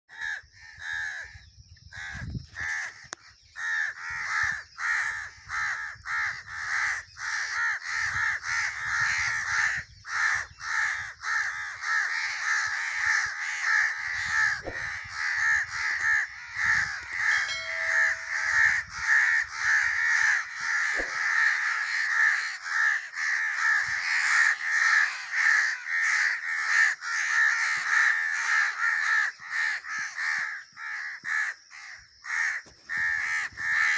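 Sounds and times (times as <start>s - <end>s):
crow cawing: 0.1s - 1.2s, 11.2s - 33.9s.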